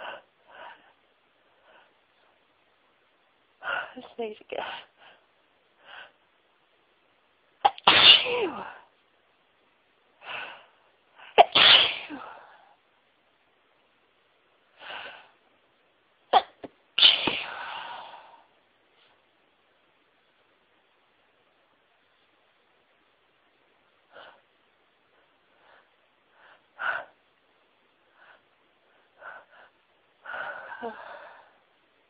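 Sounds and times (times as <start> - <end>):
person sneezing: 7.6 - 8.8, 11.4 - 12.4, 16.4 - 18.0.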